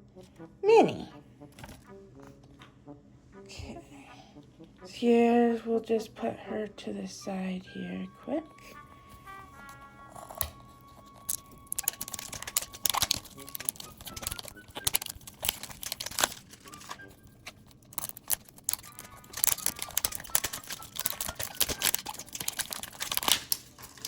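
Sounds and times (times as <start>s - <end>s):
packaging crinkling and tearing: 9.7s - 24.0s.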